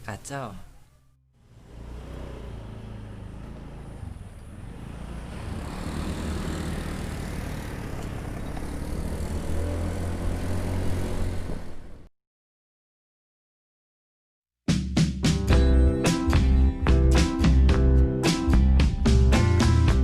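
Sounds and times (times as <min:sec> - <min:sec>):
low engine hum: 0:01.4 - 0:12.1
wind and road noise: 0:01.4 - 0:12.1.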